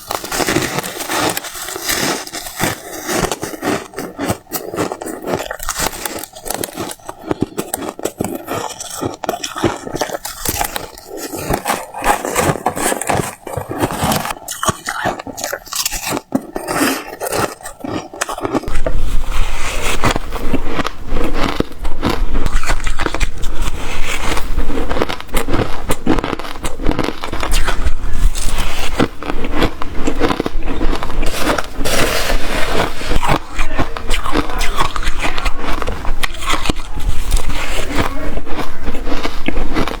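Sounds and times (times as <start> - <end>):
crunching ice bites: 0.0 - 18.9, 20.0 - 23.4.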